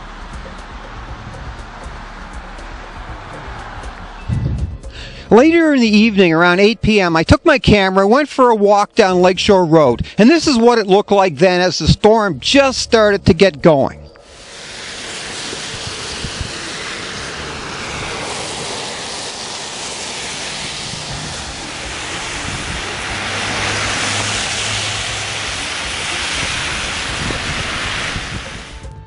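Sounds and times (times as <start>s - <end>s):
wind rushing: 0.0s - 6.5s, 14.2s - 29.0s
street traffic: 0.0s - 7.3s, 10.0s - 29.0s.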